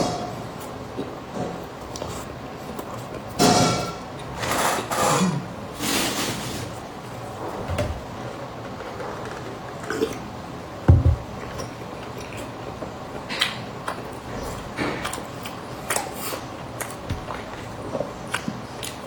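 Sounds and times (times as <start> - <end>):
low thump: 10.9 - 11.3
chewing a pastry: 11.6 - 19.0.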